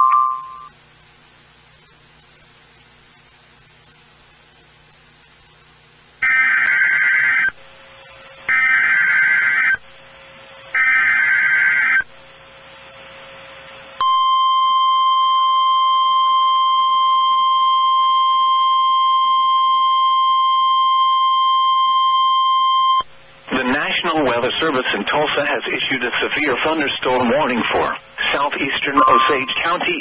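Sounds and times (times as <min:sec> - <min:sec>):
steady single-pitch alert tone: 0:00.0 - 0:00.7, 0:29.0 - 0:29.7
buzzing data bursts: 0:29.0 - 0:29.8.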